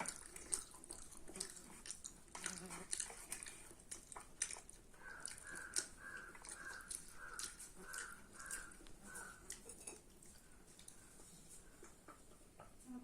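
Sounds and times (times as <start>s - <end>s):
soft clicks of eating: 0.0s - 13.0s
bird calling: 5.0s - 9.5s.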